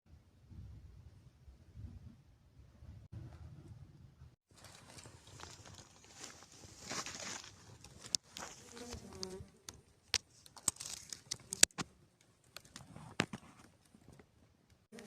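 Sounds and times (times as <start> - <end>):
sharp clicks and crackles: 7.8 - 15.0.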